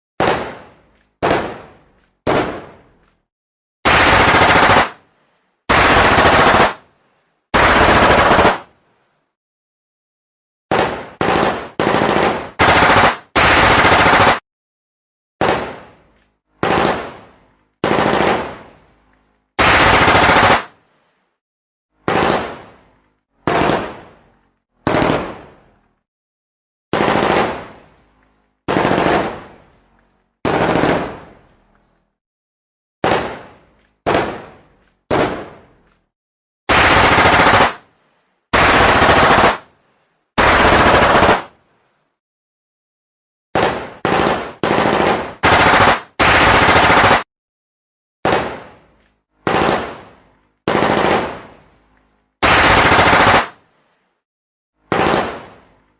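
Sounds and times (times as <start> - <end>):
gunfire bursts: 0.2 - 2.8, 3.8 - 5.0, 5.7 - 6.8, 7.6 - 8.7, 10.7 - 14.4, 16.6 - 18.7, 19.6 - 20.7, 22.0 - 22.8, 23.4 - 24.2, 24.8 - 25.6, 26.9 - 27.8, 28.7 - 29.6, 30.4 - 31.4, 33.0 - 34.4, 35.1 - 35.5, 36.7 - 37.8, 38.5 - 39.7, 40.4 - 41.5, 43.6 - 47.3, 49.4 - 50.1, 50.7 - 51.5, 52.4 - 53.6, 54.9 - 55.6.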